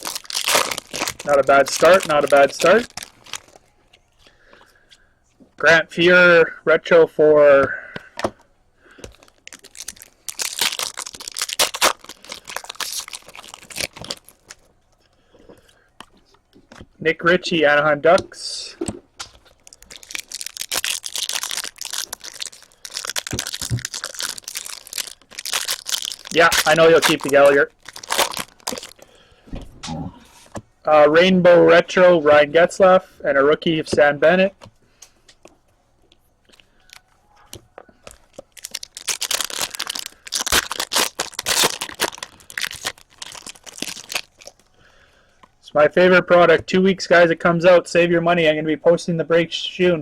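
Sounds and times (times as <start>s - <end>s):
wrapper crinkling and tearing: 0.0s - 3.6s, 9.1s - 14.7s, 19.3s - 29.0s, 38.0s - 44.7s.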